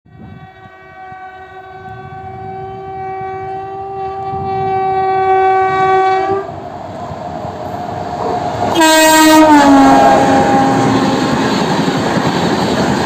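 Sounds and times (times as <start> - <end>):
locomotive horn blast: 0.0 - 6.6, 8.7 - 11.4
train rumble: 0.1 - 13.0.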